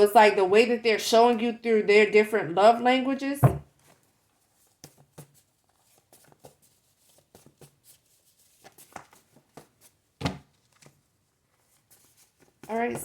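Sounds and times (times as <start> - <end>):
loud thump: 3.4 - 3.6.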